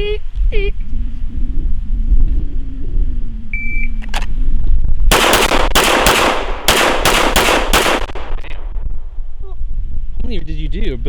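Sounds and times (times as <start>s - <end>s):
rapid handgun shots: 5.1s - 8.5s.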